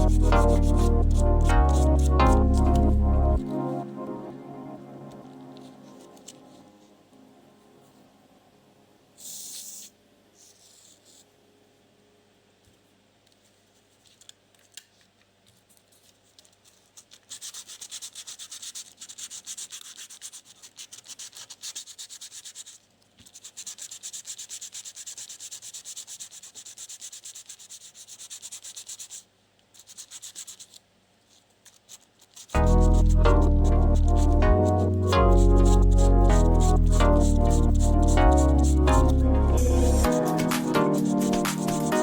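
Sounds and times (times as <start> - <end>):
rapid rubbing strokes: 0.0 - 3.7, 31.7 - 42.0.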